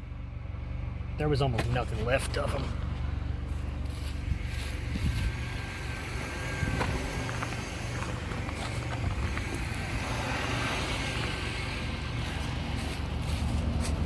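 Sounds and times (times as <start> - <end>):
car engine rumble: 0.0 - 14.0
road noise: 0.0 - 14.0.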